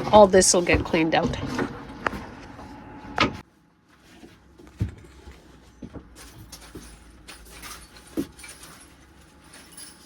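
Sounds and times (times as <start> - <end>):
rustling and scraping of objects: 0.0 - 10.0.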